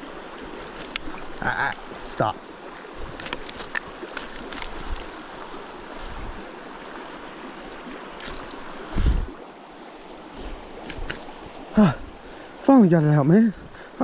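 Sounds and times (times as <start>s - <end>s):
creek water over rapids: 0.0s - 14.0s
handling clicks: 0.4s - 2.4s, 3.1s - 5.8s, 8.2s - 8.6s, 10.7s - 11.4s.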